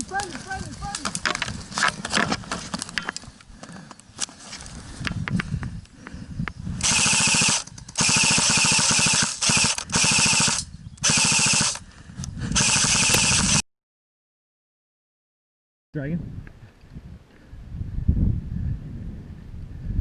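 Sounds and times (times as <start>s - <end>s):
airsoft rifle full-auto bursts: 6.8s - 11.8s, 12.5s - 13.6s.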